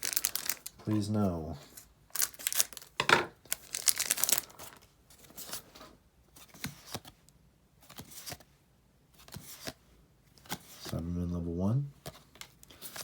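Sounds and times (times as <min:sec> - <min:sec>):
card pack wrapper crinkling: 0:00.0 - 0:01.2, 0:02.1 - 0:05.6
cards sliding against each other: 0:07.9 - 0:08.4, 0:09.2 - 0:09.8, 0:10.4 - 0:11.0, 0:12.0 - 0:13.0.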